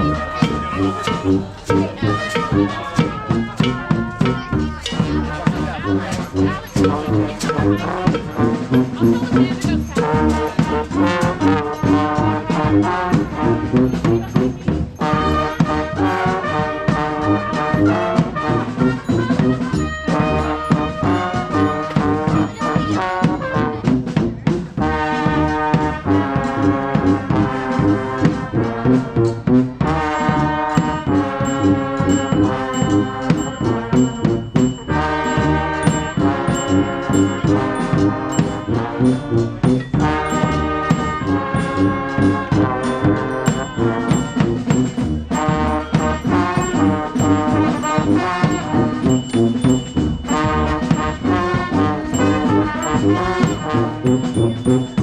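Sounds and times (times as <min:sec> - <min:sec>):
brass band playing: 0:00.0 - 0:55.0
steady drum beat: 0:00.0 - 0:55.0.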